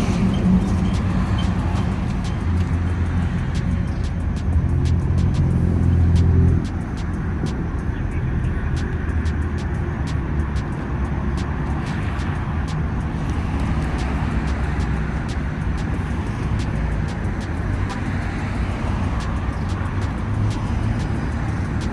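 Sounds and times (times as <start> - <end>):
faint regular ticking: 0.0 - 8.0, 8.7 - 21.9
rumble of street traffic: 0.0 - 21.9.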